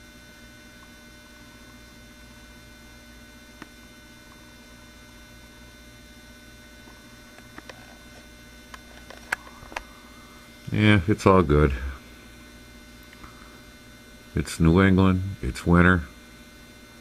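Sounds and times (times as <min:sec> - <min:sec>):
steady electrical hum: 0:00.0 - 0:17.0.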